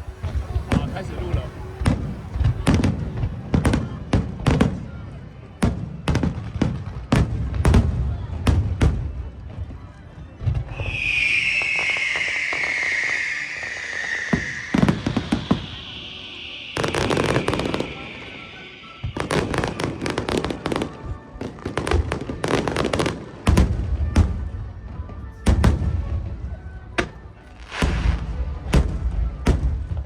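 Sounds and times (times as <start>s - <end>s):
fireworks crackling pops and bangs: 0.0s - 9.8s, 10.4s - 30.0s
firework hiss falling in pitch: 10.7s - 20.9s.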